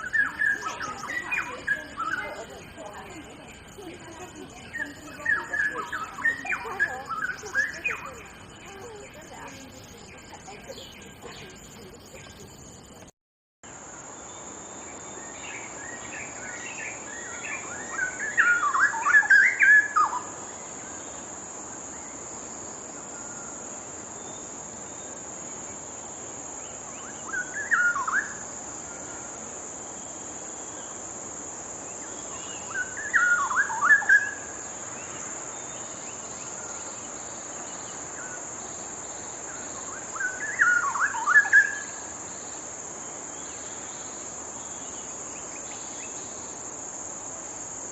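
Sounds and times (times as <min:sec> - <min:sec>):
bird singing bubbling phrases: 0:00.0 - 0:13.0
high insect drone: 0:00.0 - 0:13.1, 0:13.7 - 0:47.9.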